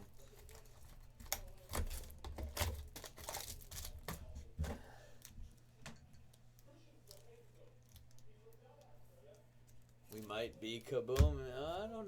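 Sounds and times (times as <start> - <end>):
pack wrappers crinkling: 0.2 - 4.2.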